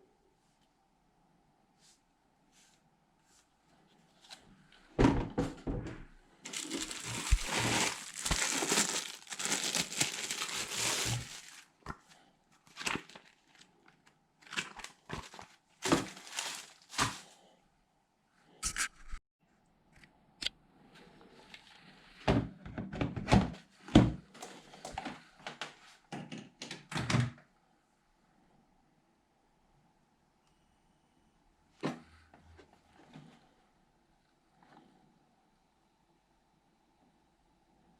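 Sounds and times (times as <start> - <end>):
crinkling and rustling: 6.4 - 17.4.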